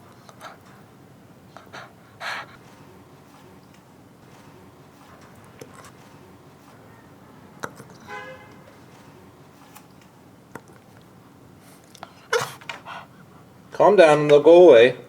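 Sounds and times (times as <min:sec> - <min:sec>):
puppy hiccups: 0:12.3 - 0:12.7
puppy whining: 0:12.3 - 0:13.0.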